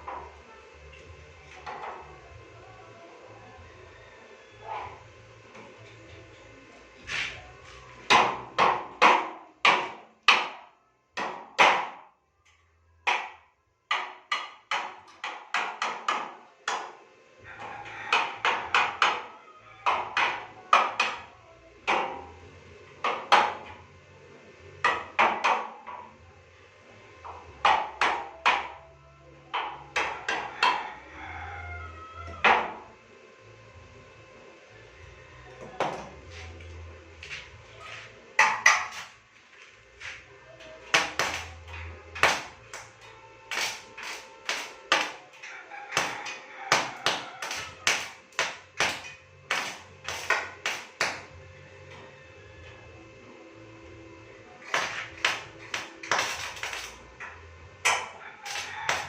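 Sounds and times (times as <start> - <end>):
hammer striking metal: 46.0 - 51.3, 57.8 - 59.0.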